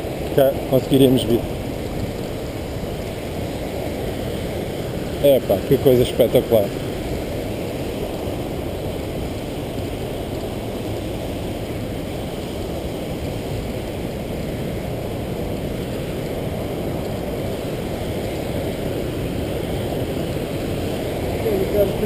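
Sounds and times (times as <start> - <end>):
waterfall roaring: 0.0 - 22.0.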